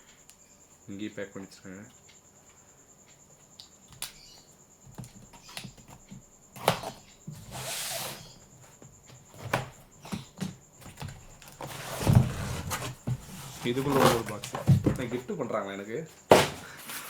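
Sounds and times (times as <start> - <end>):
packaging knocks and scrapes: 9.2 - 15.2, 16.3 - 17.0
packaging rustle: 11.0 - 15.1.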